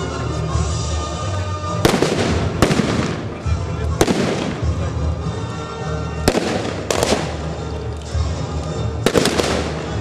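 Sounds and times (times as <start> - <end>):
music: 0.0 - 10.0
rifle shots: 1.9 - 3.3, 4.0 - 4.7, 6.3 - 7.5, 9.0 - 9.9.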